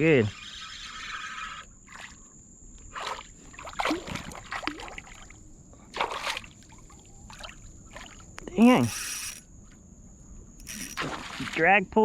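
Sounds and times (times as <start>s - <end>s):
water splashing around kayak: 2.9s - 9.4s, 10.6s - 11.7s.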